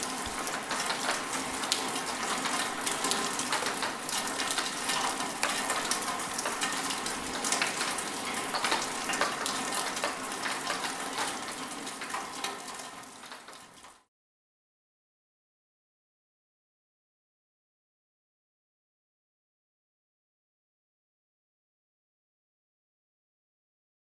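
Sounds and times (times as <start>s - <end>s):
rain falling: 0.0s - 14.1s.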